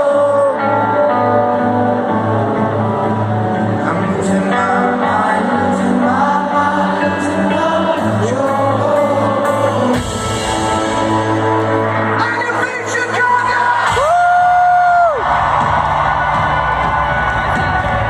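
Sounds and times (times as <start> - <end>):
person singing: 0.0 - 2.8, 3.6 - 14.2
rock band playing live: 0.0 - 18.0.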